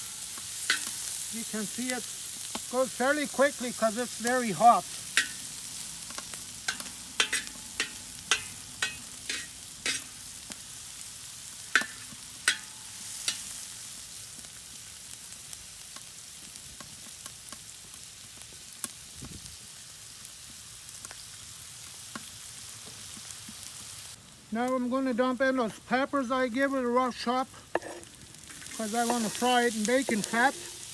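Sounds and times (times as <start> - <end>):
onions sizzling in a pan: 0.0 - 30.9
utensil tapping against pan: 6.7 - 10.1.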